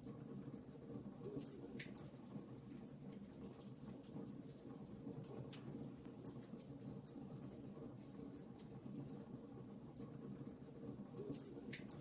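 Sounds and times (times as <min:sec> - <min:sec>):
fireplace crackling: 0:00.1 - 0:12.0.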